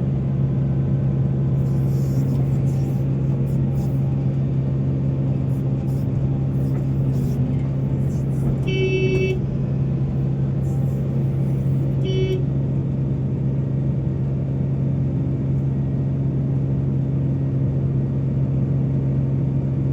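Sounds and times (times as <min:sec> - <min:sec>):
heavy diesel machinery droning: 0:00.0 - 0:16.3
short horn toots: 0:05.5 - 0:09.5, 0:10.6 - 0:12.5.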